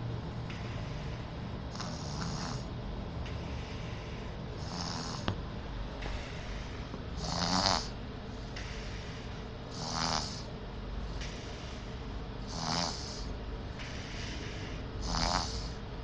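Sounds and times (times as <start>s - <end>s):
baby snoring: 1.7s - 2.7s, 4.6s - 5.3s, 7.2s - 8.0s, 8.9s - 10.5s, 12.4s - 13.3s, 13.9s - 15.8s.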